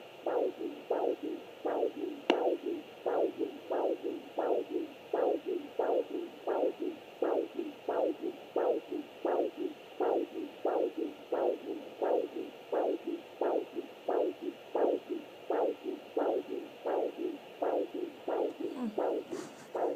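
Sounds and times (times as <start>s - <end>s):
heartbeat pulses: 0.0s - 19.9s.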